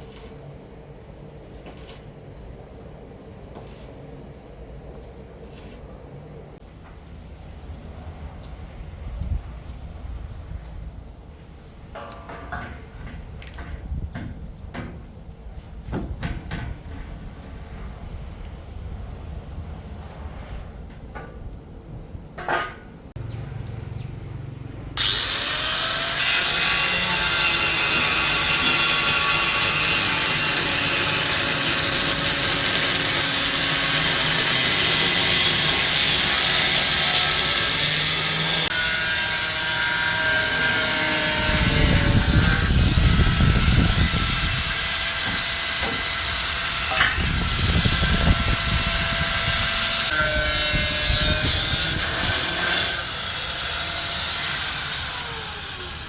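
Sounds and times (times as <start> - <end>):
power tool cutting workpiece: 25.0 - 56.0.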